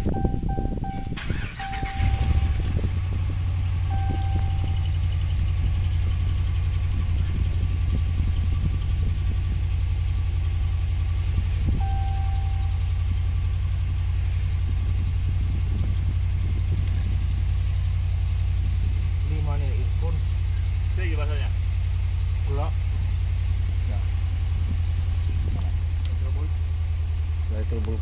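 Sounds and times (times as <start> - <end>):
short beeps: 0.0 - 2.5, 3.9 - 4.9, 11.8 - 12.9
truck engine idling: 0.0 - 28.0.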